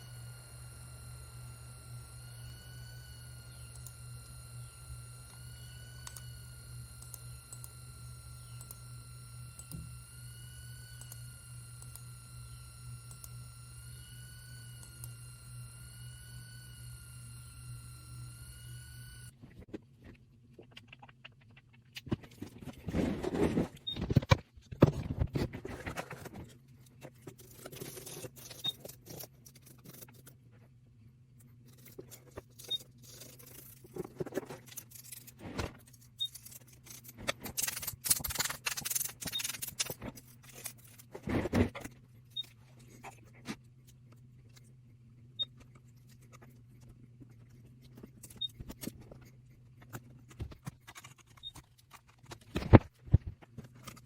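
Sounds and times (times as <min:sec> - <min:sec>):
steady low hum: 0:00.0 - 0:20.6.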